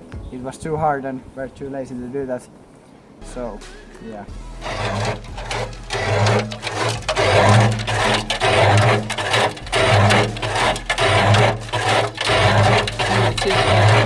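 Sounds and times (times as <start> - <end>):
washing machine drum turning: 4.4 - 14.0.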